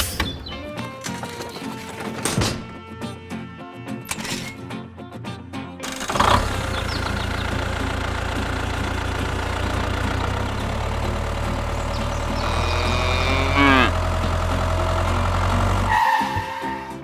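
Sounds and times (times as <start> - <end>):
engine running with deep hum: 5.8 - 16.7.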